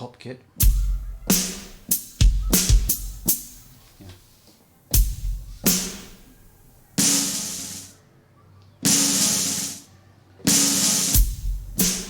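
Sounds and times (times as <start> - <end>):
drum kit cymbal strikes: 0.6 - 4.0, 5.0 - 8.0, 8.9 - 9.9, 10.5 - 12.0.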